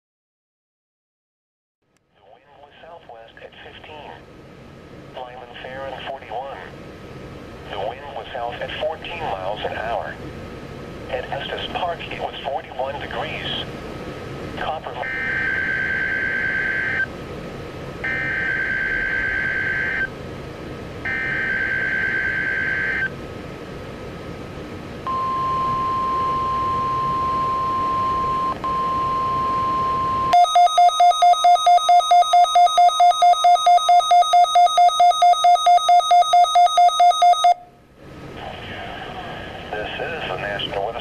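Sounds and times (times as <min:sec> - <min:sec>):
steady attention tone: 0:14.6 - 0:17.1, 0:18.0 - 0:20.1, 0:21.0 - 0:23.1, 0:25.0 - 0:37.8.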